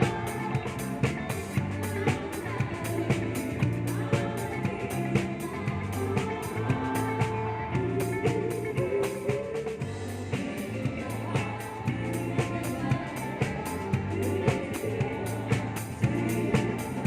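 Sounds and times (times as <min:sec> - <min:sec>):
band music: 0:00.0 - 0:17.0
drum kit steady beat: 0:00.0 - 0:17.0.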